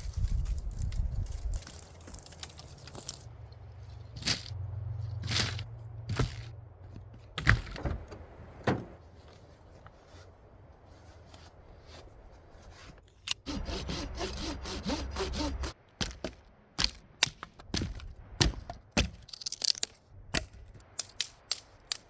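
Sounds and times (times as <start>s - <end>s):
wind rumbling on microphone: 0.0s - 2.3s
knocks and clunks: 6.0s - 9.0s.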